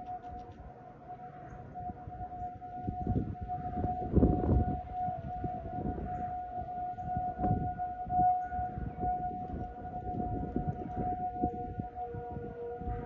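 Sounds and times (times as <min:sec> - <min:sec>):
outdoor warning sirens: 0:00.0 - 0:13.0
wind buffeting microphone: 0:00.0 - 0:13.0.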